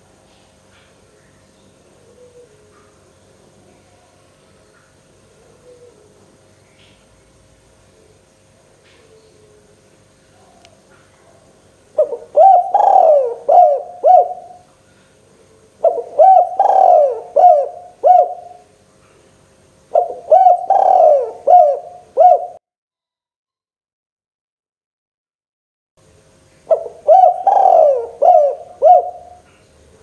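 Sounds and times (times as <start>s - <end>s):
dove cooing: 1.9s - 3.0s, 5.2s - 6.4s, 8.9s - 14.7s, 15.4s - 18.7s, 19.9s - 22.6s, 26.7s - 30.0s.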